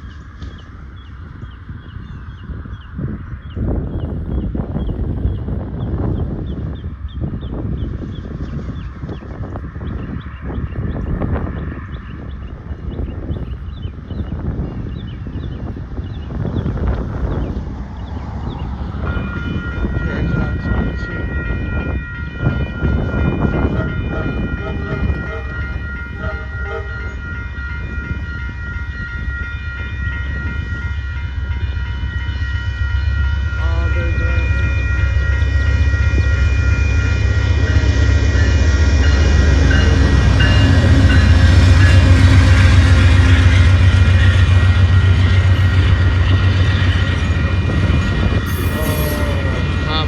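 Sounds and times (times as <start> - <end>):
train rumble: 0.0 - 50.0
train horn: 18.9 - 45.9, 48.2 - 50.0.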